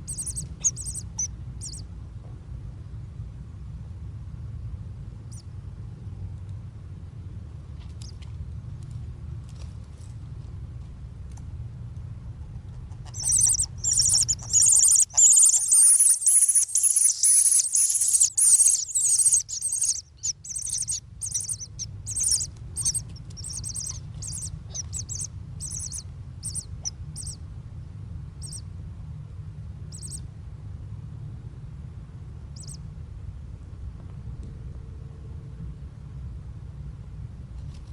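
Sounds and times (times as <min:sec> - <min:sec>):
high-pitched bird calls: 0:00.0 - 0:01.8, 0:13.1 - 0:27.4, 0:28.4 - 0:28.6, 0:29.9 - 0:30.2, 0:32.6 - 0:32.8
steady low rumble: 0:00.0 - 0:37.9.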